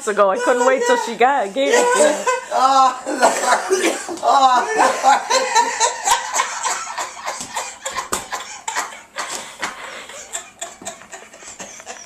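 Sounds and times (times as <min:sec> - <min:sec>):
person laughing wheezily: 0:00.3 - 0:12.0
person coughing: 0:03.5 - 0:04.2.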